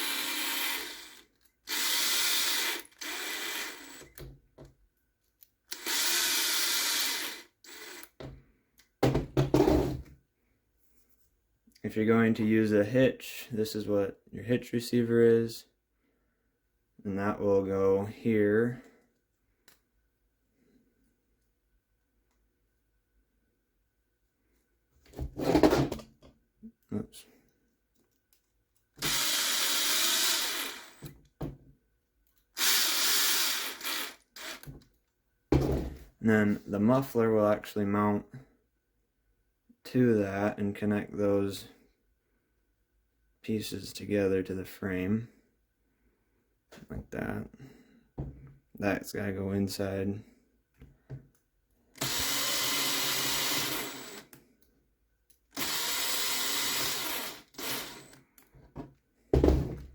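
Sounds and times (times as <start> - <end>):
electric screwdriver running: 0.0 - 4.2, 5.7 - 8.2, 29.0 - 31.1, 32.6 - 34.7, 52.0 - 54.3, 55.6 - 58.2.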